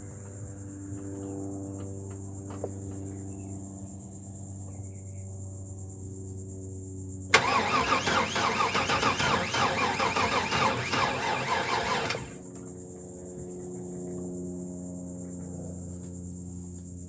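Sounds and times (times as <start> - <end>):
engine cranking on starter motor: 7.3 - 12.5.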